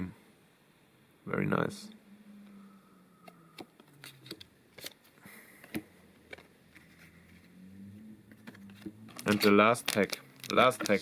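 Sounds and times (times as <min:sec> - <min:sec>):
packaging rustling: 0:08.3 - 0:11.0.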